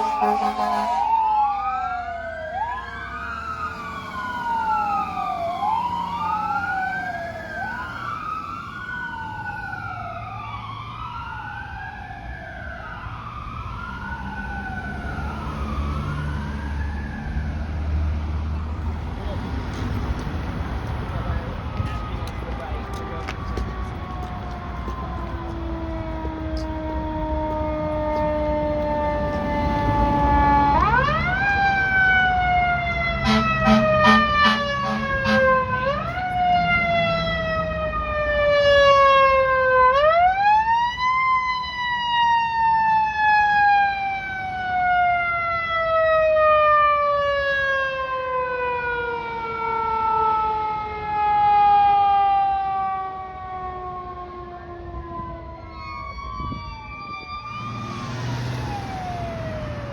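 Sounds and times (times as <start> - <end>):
air horn blasts: 0.0 - 1.1, 33.2 - 36.0
fire truck siren wailing: 0.0 - 59.9
truck engine rumbling: 2.4 - 38.3, 57.3 - 59.9.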